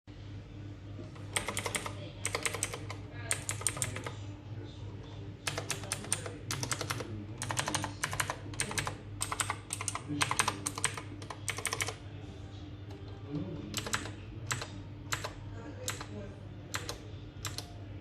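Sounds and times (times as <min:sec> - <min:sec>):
faint low hum: 0:00.1 - 0:18.0
mechanical keyboard key clicks: 0:01.3 - 0:04.0, 0:05.5 - 0:11.9, 0:13.7 - 0:15.3.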